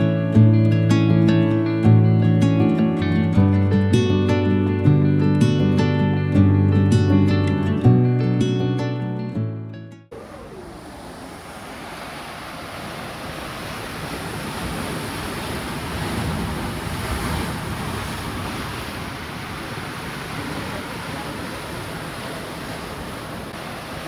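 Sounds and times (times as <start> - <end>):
ocean surf on beach: 10.1 - 24.0.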